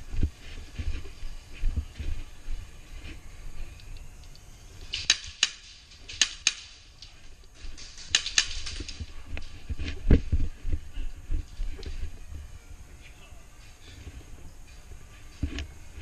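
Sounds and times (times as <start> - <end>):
airsoft gun shots: 4.9 - 6.9.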